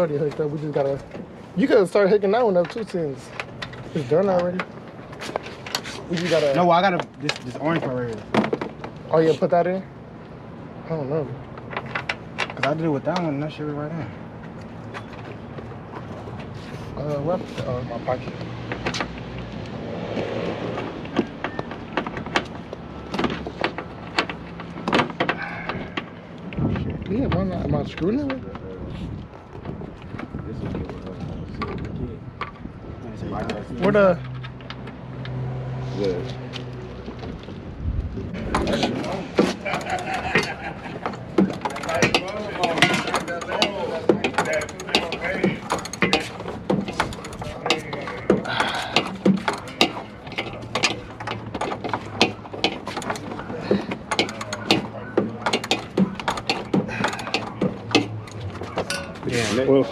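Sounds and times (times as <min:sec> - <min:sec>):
car parts clicking and knocking: 0:00.0 - 0:35.5, 0:36.5 - 0:59.9
hand tool clicking: 0:41.4 - 0:58.4.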